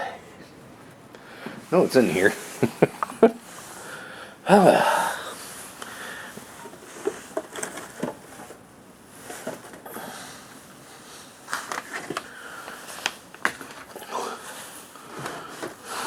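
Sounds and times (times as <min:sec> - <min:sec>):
packages rustling: 0:05.2 - 0:16.0
items clicking and knocking: 0:06.4 - 0:08.6, 0:09.2 - 0:09.9, 0:11.5 - 0:14.1, 0:15.0 - 0:15.8.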